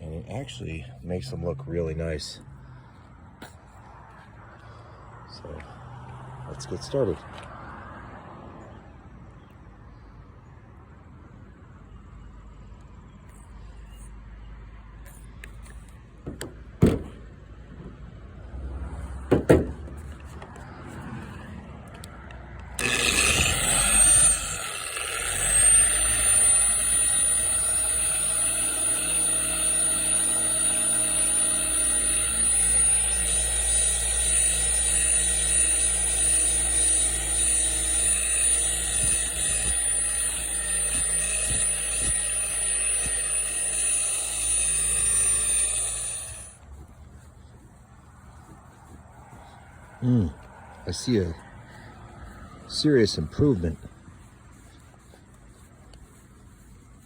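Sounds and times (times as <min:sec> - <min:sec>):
orbital buffer whining: 0:22.8 - 0:46.6.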